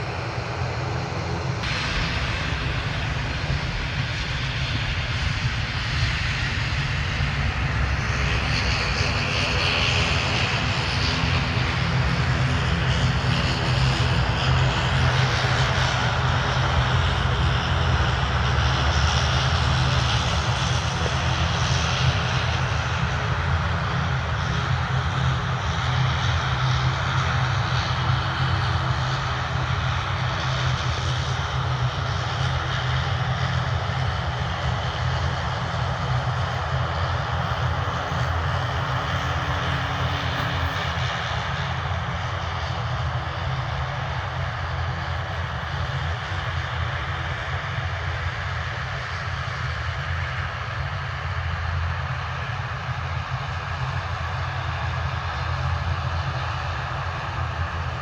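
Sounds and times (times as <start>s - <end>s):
aircraft engines rumbling: 0.0s - 58.0s
hissing whine: 0.8s - 17.8s.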